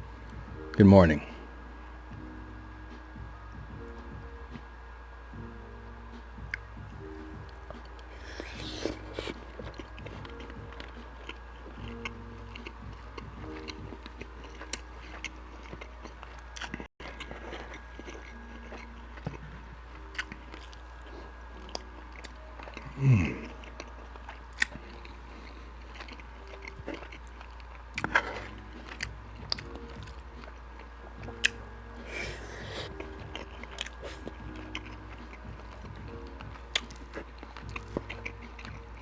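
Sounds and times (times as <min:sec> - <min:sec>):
chewing with wet mouth smacks: 0:07.4 - 0:39.0
person humming mm: 0:22.8 - 0:23.7.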